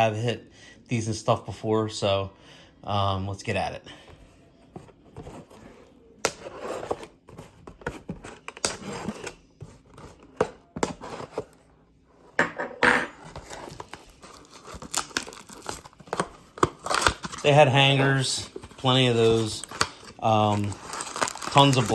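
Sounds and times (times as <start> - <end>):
plastic wrapping tearing and crinkling: 13.4 - 21.9.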